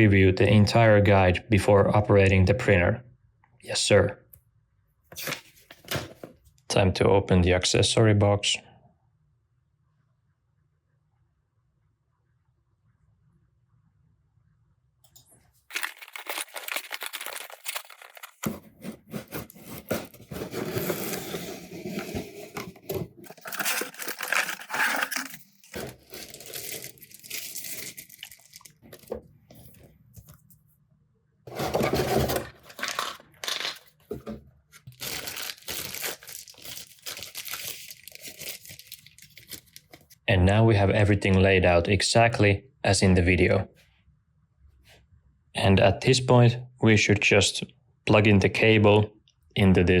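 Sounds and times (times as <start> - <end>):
packaging crinkling and tearing: 15.7 - 29.2, 31.5 - 34.1, 34.8 - 40.2.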